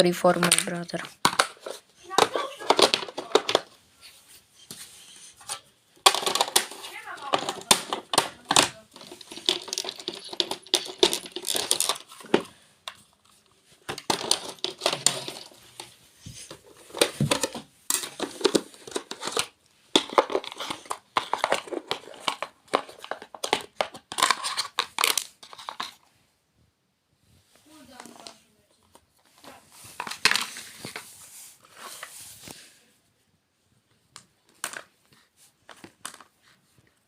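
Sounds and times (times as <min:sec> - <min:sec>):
crinkly material rattling: 0:05.4 - 0:26.0.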